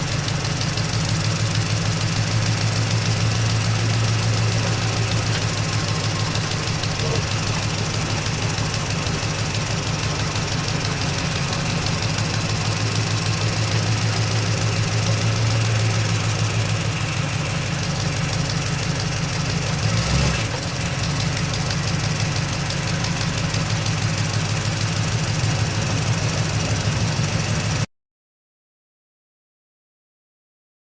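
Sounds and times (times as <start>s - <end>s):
truck engine idling: 0.0s - 27.9s
engine thump: 1.3s - 17.0s.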